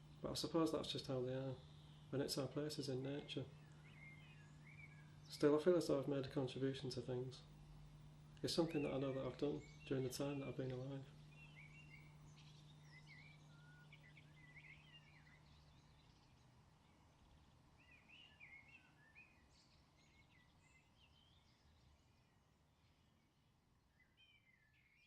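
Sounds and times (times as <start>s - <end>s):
low steady hum: 0.0s - 23.9s
small birds chirping: 0.0s - 25.0s.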